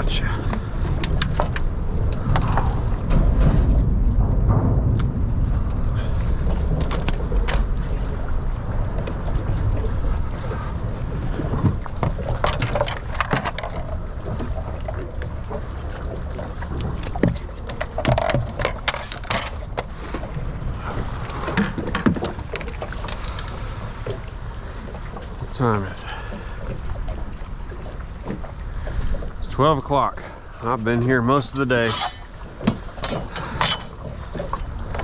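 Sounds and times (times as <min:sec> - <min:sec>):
wind rumbling on microphone: 0:00.0 - 0:35.0
sharp clicks and knocks: 0:00.5 - 0:05.8, 0:16.8 - 0:19.9.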